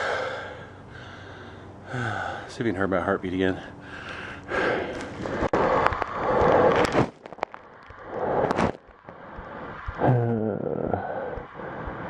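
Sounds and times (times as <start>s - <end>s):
man breathing hard: 0.0s - 2.5s, 3.5s - 5.6s, 10.7s - 12.0s
low groan: 9.9s - 12.0s.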